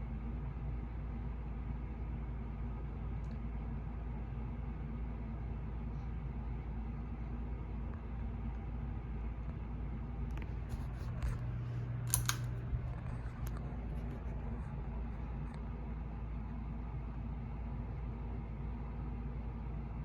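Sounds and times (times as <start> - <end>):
ceiling fan motor hum: 0.0 - 20.0
sharp clicks: 12.1 - 12.6.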